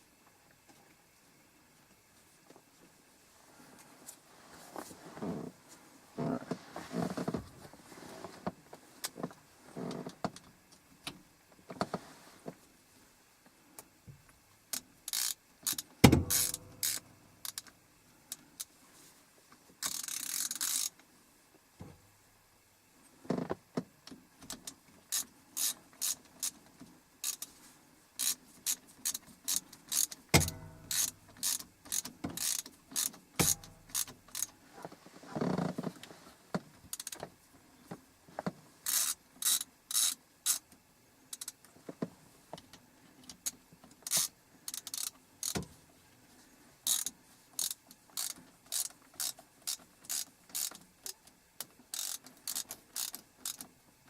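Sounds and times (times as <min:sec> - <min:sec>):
hand ratchet clicking: 0:14.7 - 0:17.7, 0:19.8 - 0:20.9, 0:28.2 - 0:34.5, 0:38.9 - 0:40.6, 0:44.0 - 0:45.6, 0:46.9 - 0:53.7.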